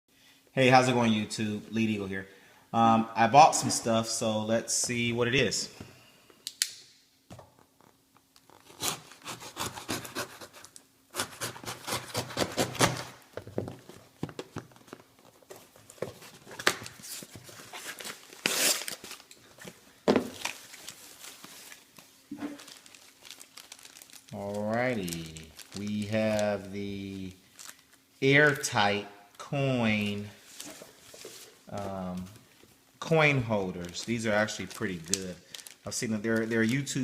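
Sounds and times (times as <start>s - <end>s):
packaging rustling and crinkling: 13.4s - 26.8s, 27.4s - 28.7s, 30.4s - 32.8s, 33.6s - 37.0s
packaging cracks: 22.6s - 26.5s.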